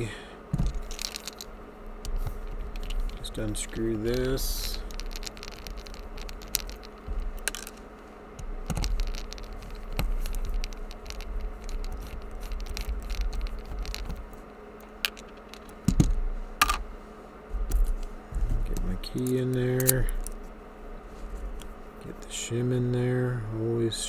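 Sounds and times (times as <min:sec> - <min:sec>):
lock handling noise: 0:00.0 - 0:16.9, 0:17.6 - 0:20.6
faint steady hum: 0:00.0 - 0:24.0
screwdriver unscrewing a screw: 0:00.7 - 0:16.0.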